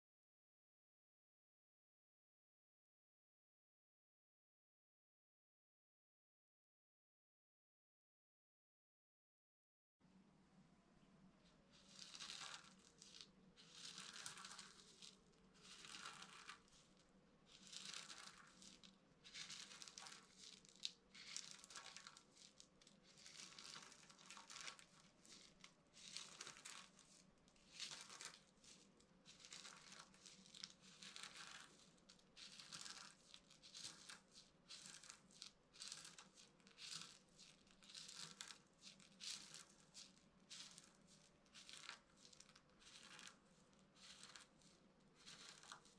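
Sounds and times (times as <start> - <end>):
bar soap crunching and crumbling: 11.8 - 16.9, 17.5 - 45.9.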